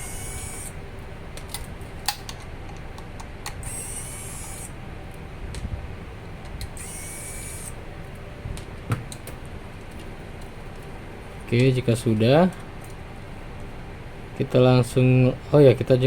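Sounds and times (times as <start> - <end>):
electric screwdriver whirring: 0.0 - 0.8, 3.6 - 4.7, 6.8 - 7.8.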